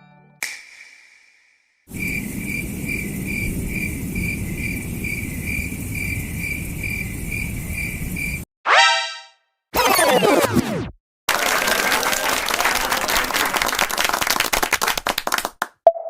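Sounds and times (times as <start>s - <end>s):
crickets chirping: 1.9s - 8.4s.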